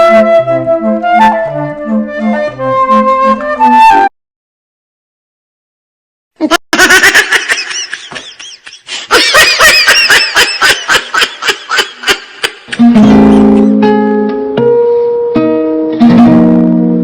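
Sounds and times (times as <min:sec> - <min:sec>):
high-pitched laughter: 0:06.4 - 0:13.8.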